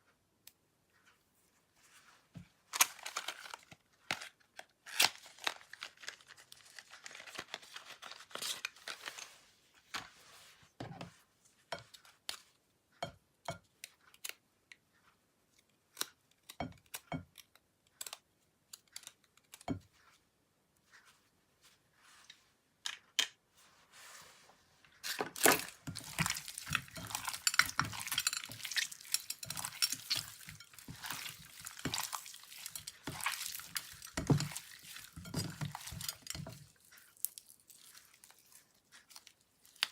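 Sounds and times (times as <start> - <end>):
slime popping and crackling: 25.4 - 38.6.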